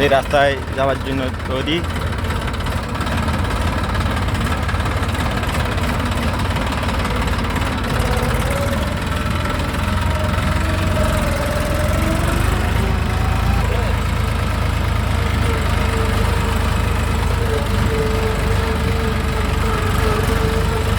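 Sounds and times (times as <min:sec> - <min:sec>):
tractor diesel engine running: 0:00.0 - 0:20.9.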